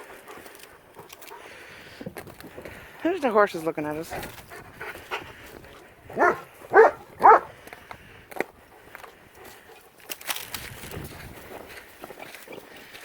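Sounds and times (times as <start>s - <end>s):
dog barking: 6.2s - 7.5s.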